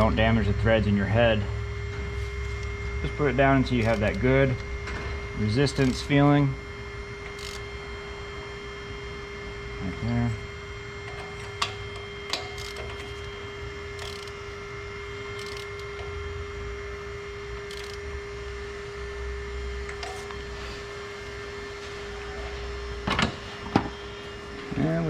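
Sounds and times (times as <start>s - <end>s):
steady hum: 0.0s - 25.0s.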